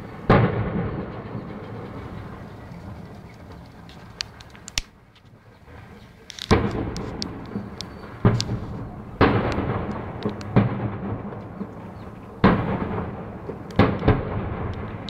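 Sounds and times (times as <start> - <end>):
explosions with rolling rumble: 0.0 - 4.0, 5.7 - 15.0
fire crackles and pops: 3.0 - 15.0
sharp cracks: 3.3 - 5.0, 6.2 - 15.0.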